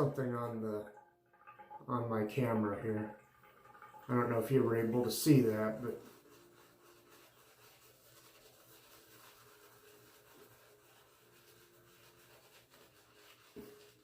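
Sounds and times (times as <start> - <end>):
shaving brush rubbing lather: 4.1 - 14.0.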